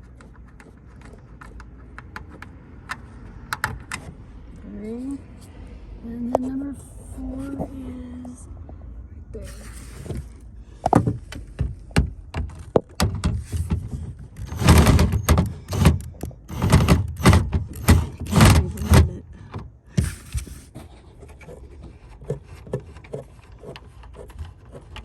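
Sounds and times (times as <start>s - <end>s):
tools rattling on tail light: 10.9s - 19.6s.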